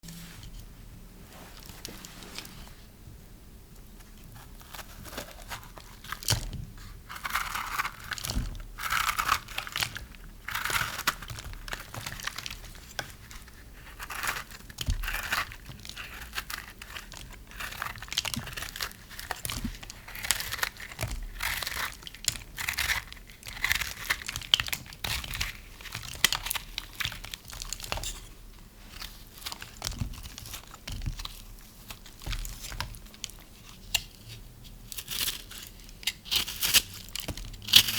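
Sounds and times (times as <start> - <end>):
knife crunching through soap: 4.3 - 28.3, 35.0 - 37.9.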